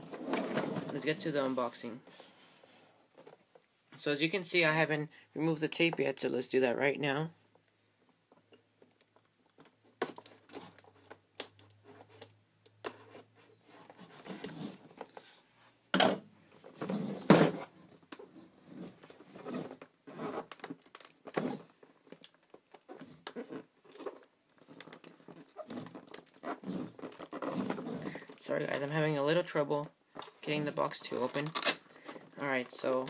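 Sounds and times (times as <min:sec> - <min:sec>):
loud rips or knocks: 0:22.8 - 0:28.3.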